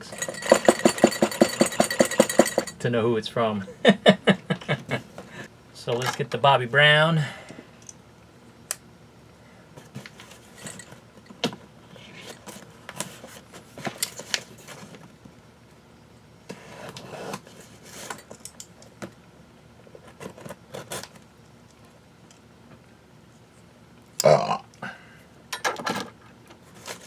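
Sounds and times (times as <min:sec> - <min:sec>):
small metal items jingling: 0:00.0 - 0:02.8.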